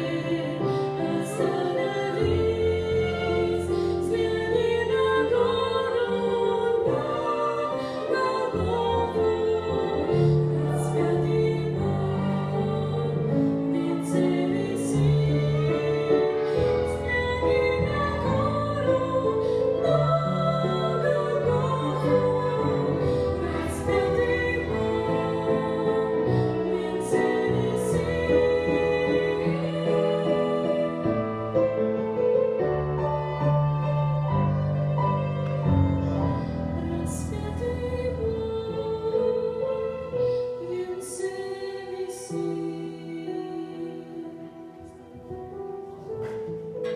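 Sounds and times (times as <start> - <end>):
voices singing: 0.0 - 32.1
instrumental accompaniment: 0.0 - 42.8.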